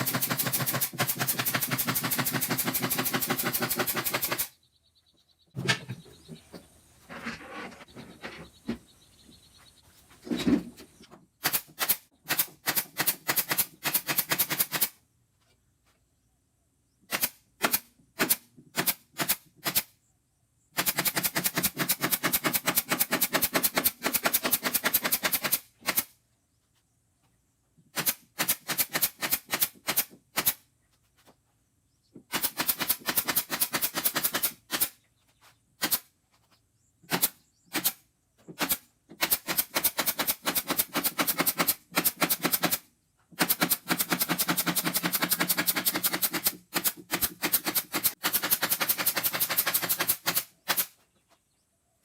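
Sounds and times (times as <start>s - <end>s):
rapid mechanical clicks: 0.0s - 4.5s, 43.4s - 50.9s.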